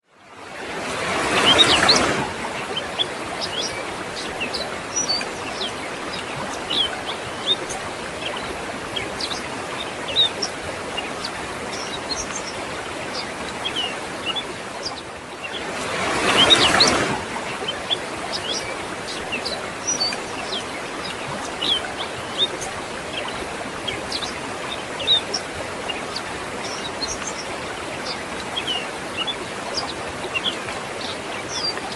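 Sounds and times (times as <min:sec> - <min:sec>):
waterfall rushing: 0:00.4 - 0:31.9
birds chirping: 0:01.1 - 0:31.9.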